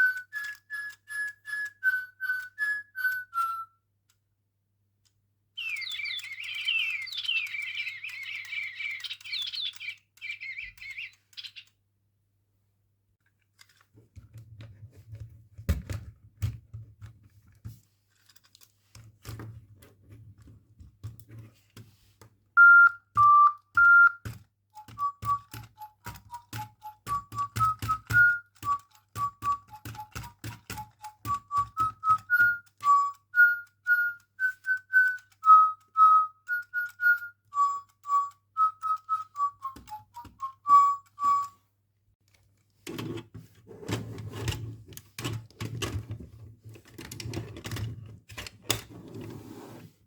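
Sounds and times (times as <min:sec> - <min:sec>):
electronic toy bird chirping: 0:00.0 - 0:03.8, 0:05.6 - 0:11.8, 0:22.6 - 0:24.2, 0:24.8 - 0:41.6
scattered clicks: 0:05.0 - 0:11.8, 0:23.2 - 0:41.6.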